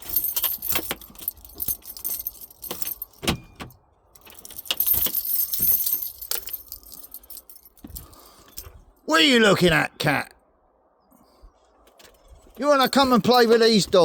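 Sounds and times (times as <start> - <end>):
key in door lock clack: 0.0 - 8.8
keys jangling: 0.0 - 9.0, 12.2 - 14.0.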